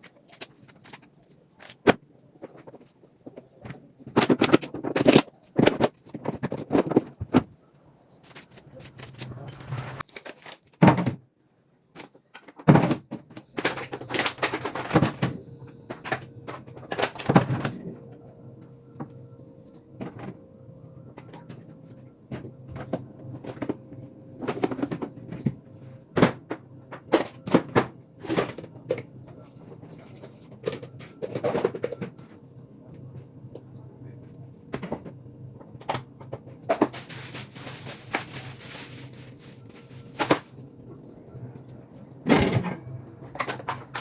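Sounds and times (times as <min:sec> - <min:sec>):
objects knocking and clattering: 0:01.8 - 0:07.6
low steady hum: 0:12.8 - 0:44.0.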